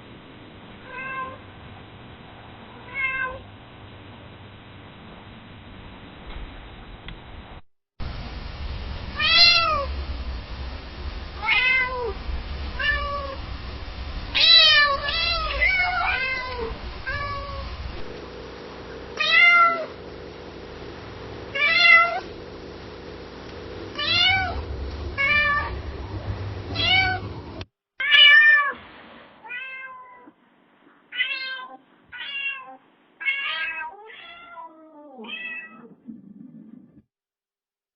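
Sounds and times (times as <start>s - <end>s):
low background rumble: 0.0s - 27.7s
cat meowing: 0.8s - 1.4s, 2.8s - 3.4s, 11.4s - 12.2s, 12.8s - 13.4s, 14.4s - 17.7s, 19.2s - 19.9s, 26.8s - 27.2s, 29.4s - 30.3s, 31.1s - 36.0s.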